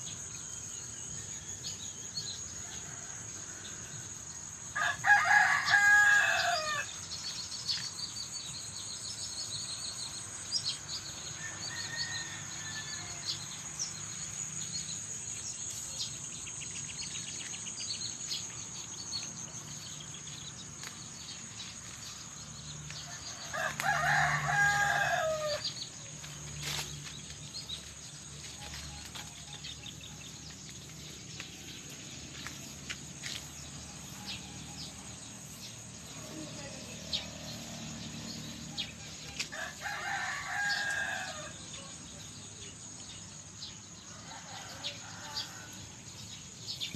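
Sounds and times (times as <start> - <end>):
high insect trill: 0.0 - 46.9
rooster crowing: 4.7 - 7.0, 11.2 - 13.9, 22.9 - 25.8, 39.2 - 41.8, 44.1 - 46.0.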